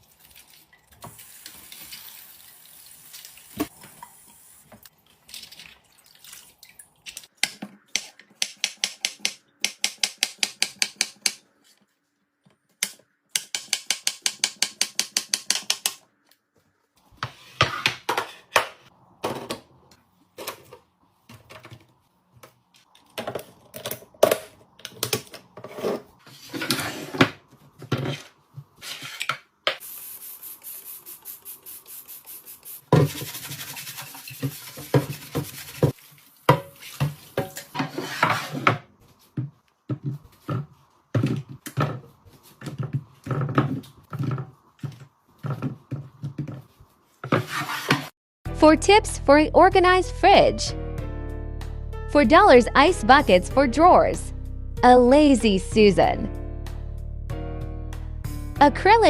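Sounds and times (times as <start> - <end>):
steady hiss: 29.8 - 32.9.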